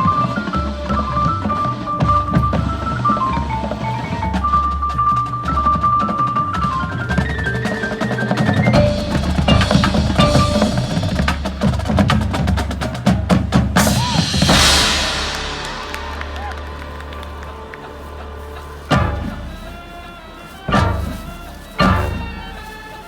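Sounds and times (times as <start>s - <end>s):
marching drum line: 0.0s - 23.0s
melody line: 8.7s - 11.3s
loud cymbal crash: 13.8s - 19.7s.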